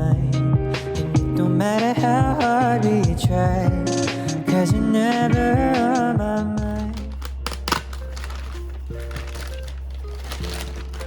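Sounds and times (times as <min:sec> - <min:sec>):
soft background music: 0:00.0 - 0:11.0
packaging crinkling clicks: 0:06.6 - 0:11.0.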